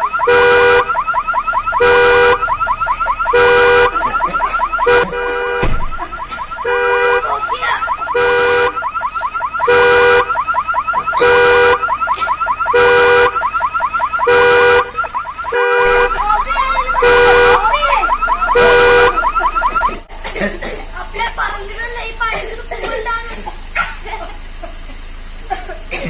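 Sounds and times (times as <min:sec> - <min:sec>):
car alarm chirping warble: 0:00.0 - 0:20.1
car alarm horn tone: 0:00.0 - 0:20.1.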